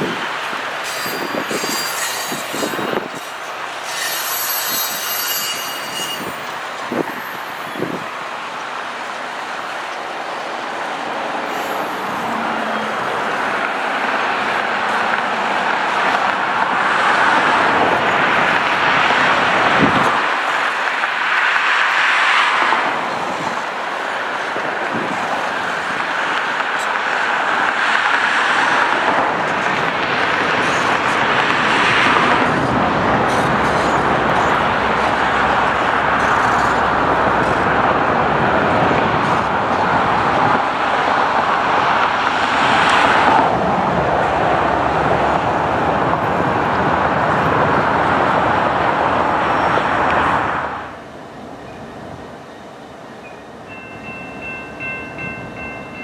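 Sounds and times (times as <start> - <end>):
tyre and road noise: 0.0 - 9.2.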